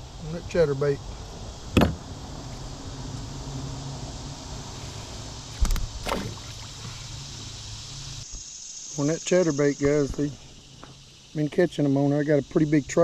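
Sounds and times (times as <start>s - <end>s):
river water rushing: 5.6s - 7.2s.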